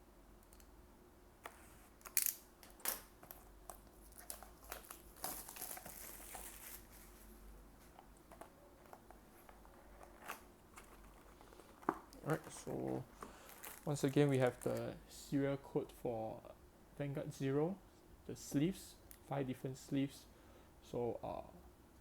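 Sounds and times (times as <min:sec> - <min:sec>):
cardboard and wrapping crinkling: 0:03.2 - 0:14.8.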